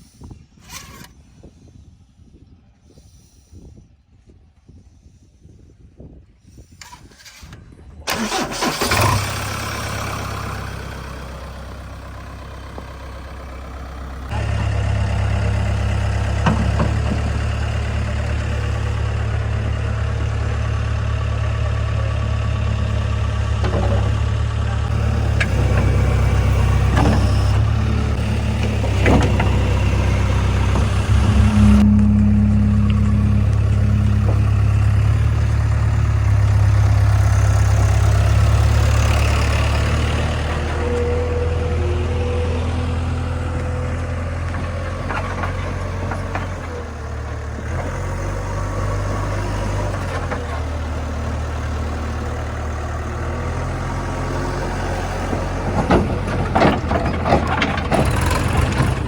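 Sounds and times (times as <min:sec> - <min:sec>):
diesel engine running at low revs: 0:06.4 - 0:59.0
knocks and clatter: 0:16.3 - 0:17.9, 0:23.6 - 0:31.9, 0:55.2 - 0:59.0.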